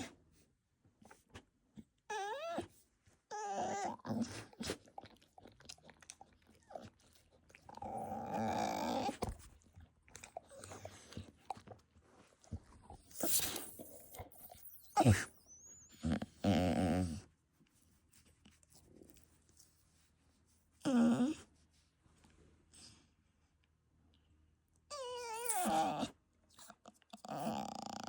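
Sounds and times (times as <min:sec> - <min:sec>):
puppy whining: 0:01.8 - 0:11.8, 0:12.9 - 0:17.3, 0:20.8 - 0:21.4, 0:24.8 - 0:28.0
puppy growling: 0:03.3 - 0:11.8, 0:13.0 - 0:17.3, 0:24.9 - 0:28.0
clicks and snuffles: 0:09.0 - 0:15.4.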